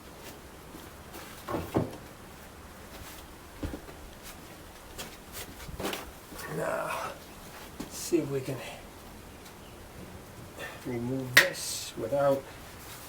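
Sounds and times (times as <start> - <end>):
tools and parts clunking: 1.4 - 2.1.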